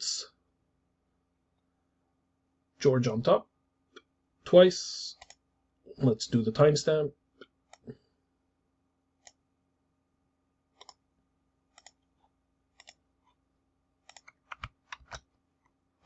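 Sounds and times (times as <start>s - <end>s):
mouse and keyboard clicks: 5.2s - 5.4s, 10.8s - 11.0s, 11.7s - 12.0s, 12.7s - 13.4s, 14.0s - 15.3s.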